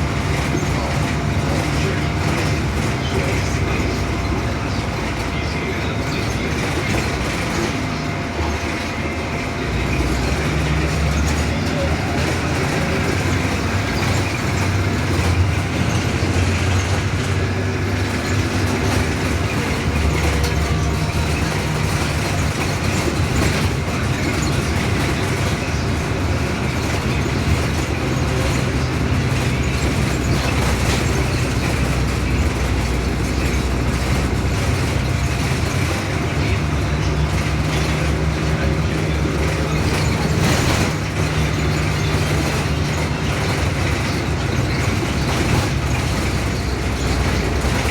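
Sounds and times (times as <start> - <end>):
bus engine drone: 0.0 - 47.9
road noise: 0.0 - 47.9
body rattles: 9.9 - 47.9.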